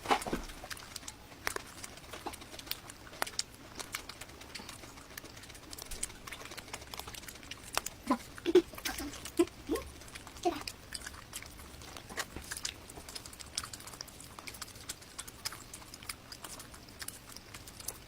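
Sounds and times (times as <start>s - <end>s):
chewing and mouth sounds: 0.0s - 18.0s.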